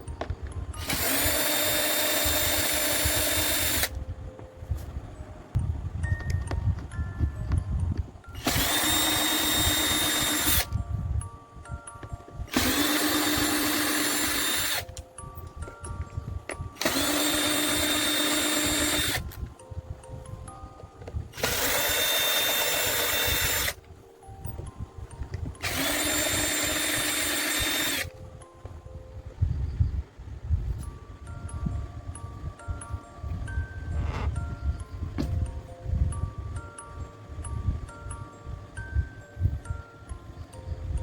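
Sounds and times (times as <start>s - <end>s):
background music with stepped notes: 0.0s - 41.0s
power drill running: 0.8s - 4.0s, 8.4s - 10.8s, 12.5s - 14.9s, 16.8s - 19.3s, 21.3s - 23.8s, 25.6s - 28.1s.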